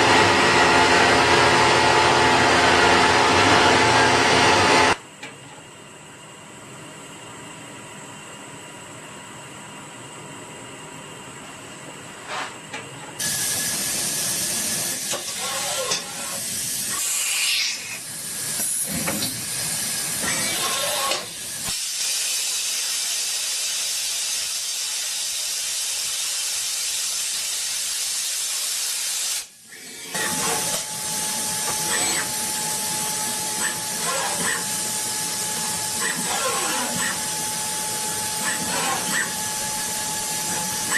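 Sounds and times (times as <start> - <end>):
steady loud hiss: 16.4 - 29.6.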